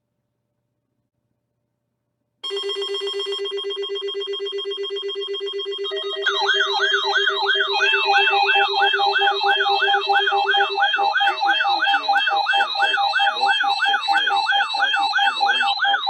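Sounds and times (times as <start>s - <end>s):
pulsing electronic alert tone: 5.6s - 16.0s
up-and-down siren wail: 5.7s - 16.0s.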